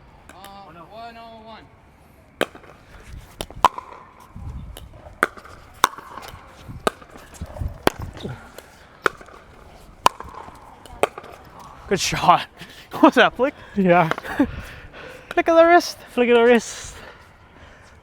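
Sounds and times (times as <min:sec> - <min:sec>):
ball bouncing on court: 0:02.4 - 0:11.6
paddles striking plastic ball: 0:02.4 - 0:11.7.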